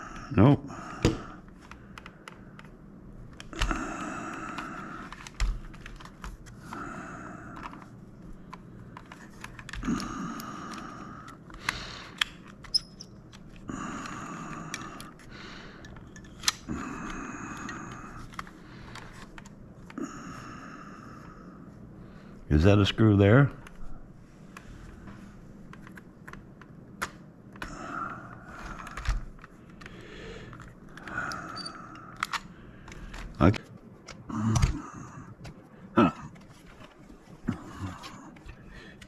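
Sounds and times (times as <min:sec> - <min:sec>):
plastic parts clicking and tapping: 0:07.5 - 0:15.2, 0:28.6 - 0:34.8.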